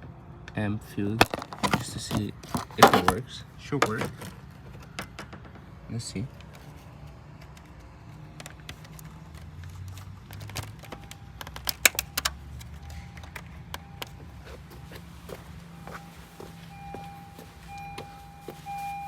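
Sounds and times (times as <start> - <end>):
steady low hum: 12.6 - 19.0
faint high tone: 15.8 - 19.0.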